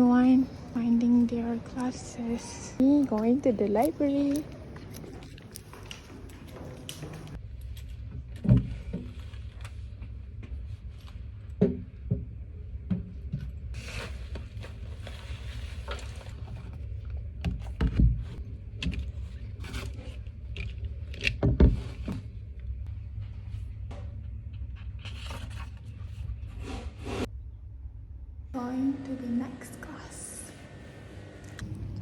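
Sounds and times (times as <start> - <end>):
steady low rumble: 31.6 - 32.0.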